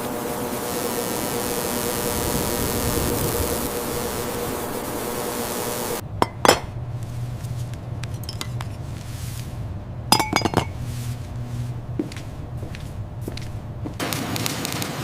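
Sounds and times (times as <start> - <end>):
low steady hum: 0.7 - 14.0
ringing clinks: 10.1 - 10.7.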